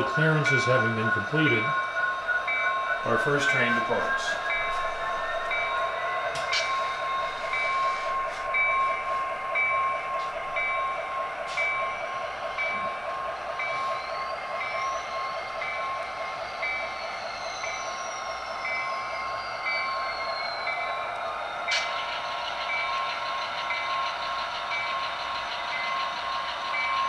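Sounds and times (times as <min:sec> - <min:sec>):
bell ringing: 0:00.0 - 0:21.0
model locomotive engine chugging: 0:00.0 - 0:27.0.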